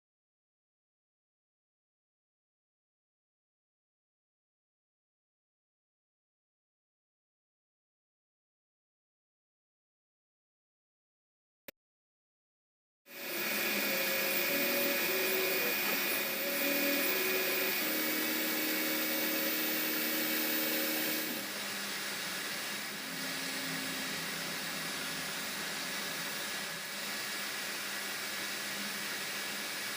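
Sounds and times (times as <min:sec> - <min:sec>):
stepper motors whining: 0:13.1 - 0:21.5
fan whirring: 0:13.1 - 0:29.9.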